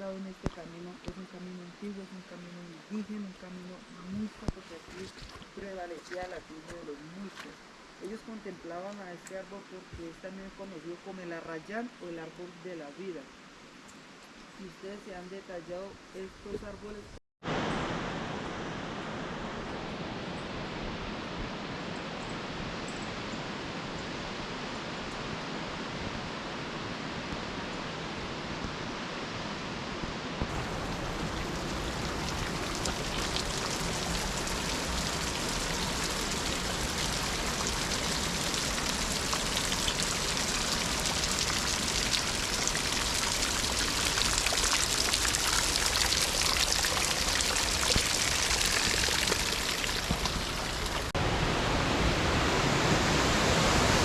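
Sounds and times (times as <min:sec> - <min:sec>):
rushing stream water: 0:02.2 - 0:09.4, 0:30.4 - 0:54.0.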